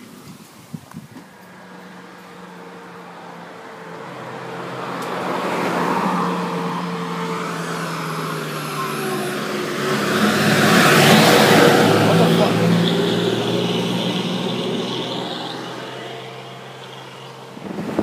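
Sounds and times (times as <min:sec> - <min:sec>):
road noise: 0:00.0 - 0:18.0.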